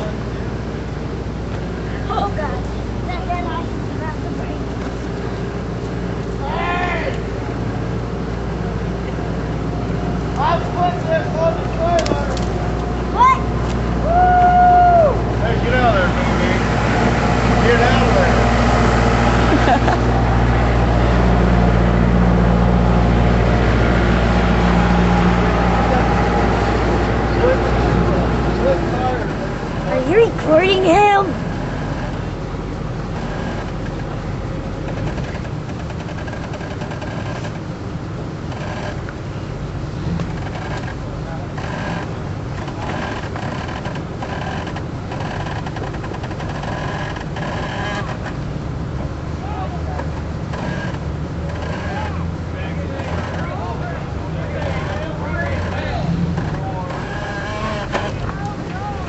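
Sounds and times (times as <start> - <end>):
car engine running steadily: 14.9 - 59.0.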